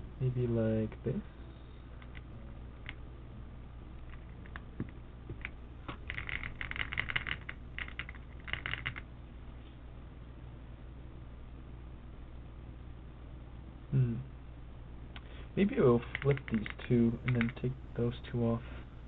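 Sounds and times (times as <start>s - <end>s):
plastic keycaps clicking: 16.5s - 17.7s.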